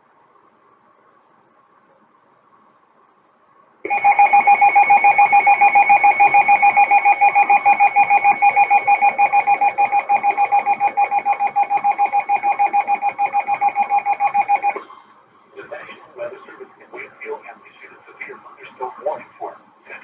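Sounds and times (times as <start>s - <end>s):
loud harsh electronic alarm beeping: 3.9s - 14.8s.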